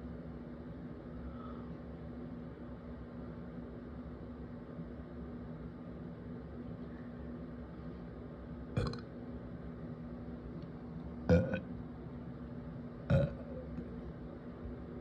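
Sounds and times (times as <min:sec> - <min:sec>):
person burping: 0:08.8 - 0:09.0, 0:11.3 - 0:11.7, 0:13.1 - 0:13.7.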